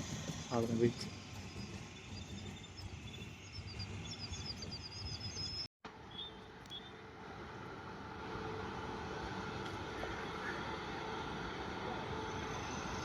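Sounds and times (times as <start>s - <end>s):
small birds chirping: 0.2s - 6.9s.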